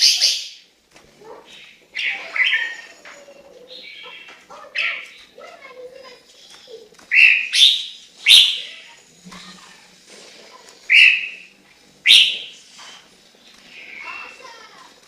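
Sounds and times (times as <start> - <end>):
bird whistled notes: 10.9 - 11.5, 12.1 - 12.6.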